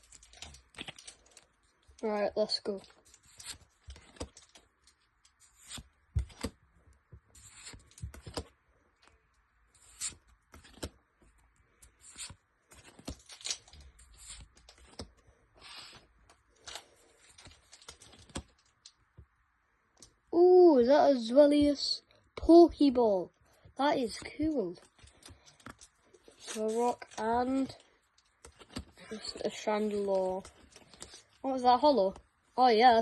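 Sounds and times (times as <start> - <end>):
trading cards handled: 0.0 - 2.0, 2.6 - 6.6, 7.2 - 9.2, 9.8 - 19.0, 24.2 - 31.4.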